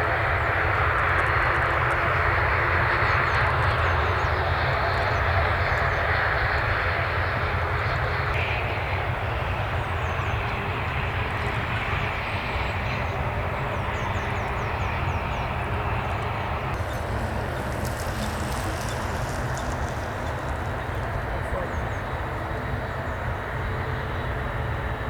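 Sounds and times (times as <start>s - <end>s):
small birds chirping: 16.8s - 21.8s
jet engines roaring: 16.8s - 22.6s.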